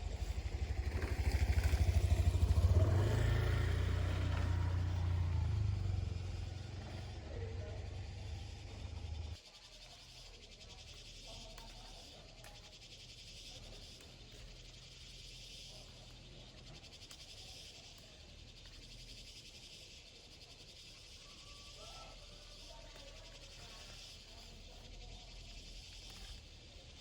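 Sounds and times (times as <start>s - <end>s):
insects chirring: 0.0s - 27.0s.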